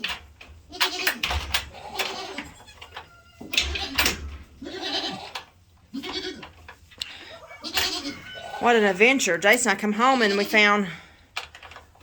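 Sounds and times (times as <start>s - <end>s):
goats bleating: 0.7s - 4.0s, 4.6s - 6.5s, 7.2s - 9.0s, 9.9s - 10.8s.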